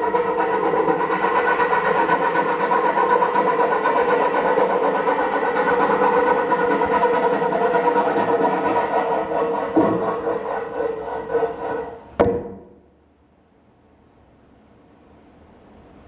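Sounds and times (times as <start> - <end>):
sharp knock: 12.2 - 12.8.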